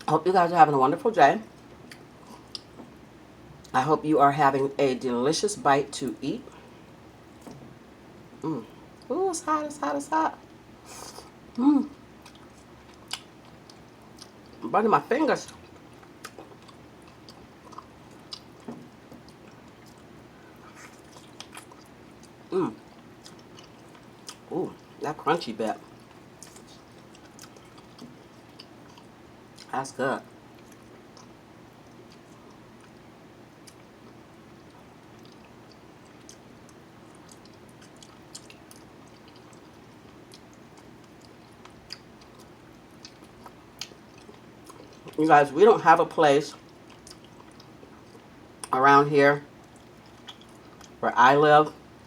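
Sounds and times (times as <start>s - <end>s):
chewing with crunches: 11.0s - 14.7s, 15.4s - 25.0s, 25.8s - 45.3s, 46.4s - 48.8s, 49.5s - 51.0s
wet mouth smacks chewing: 25.8s - 29.7s.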